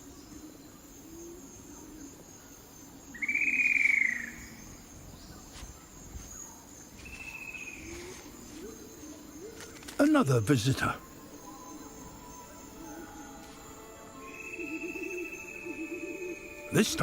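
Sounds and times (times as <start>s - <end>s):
faint forest background: 0.0s - 17.0s
whistled bird calls: 3.1s - 4.6s, 14.3s - 17.0s.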